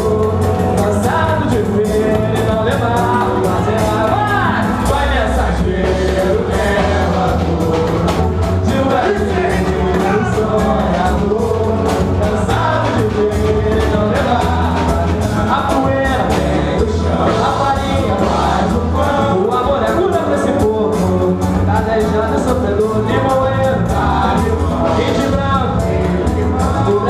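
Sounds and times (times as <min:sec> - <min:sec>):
bass: 0:00.0 - 0:27.0
person singing: 0:00.0 - 0:27.0
samba band playing live: 0:00.0 - 0:27.0
steady percussion beat: 0:00.0 - 0:27.0.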